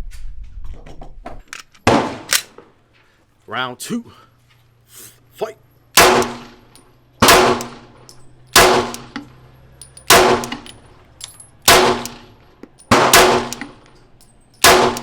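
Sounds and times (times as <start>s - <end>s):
gunshots with ringing tail: 6.0s - 9.1s, 10.1s - 10.7s, 11.6s - 13.7s, 14.6s - 15.0s.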